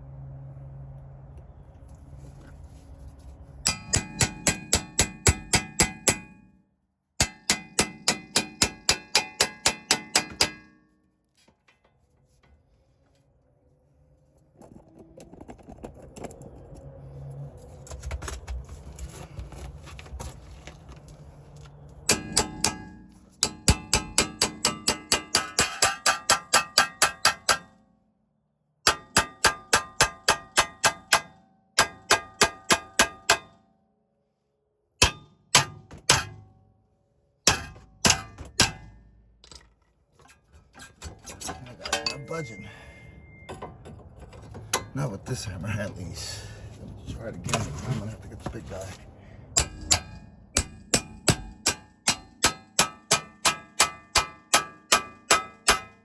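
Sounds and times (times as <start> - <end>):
clattering and handling noise: 1.3 - 4.2, 10.9 - 22.1, 37.5 - 50.0
hammer striking steel: 3.6 - 6.5, 7.2 - 11.0, 22.1 - 27.9, 28.8 - 33.7, 35.0 - 36.6, 37.4 - 39.1, 41.0 - 43.8, 49.6 - 56.0.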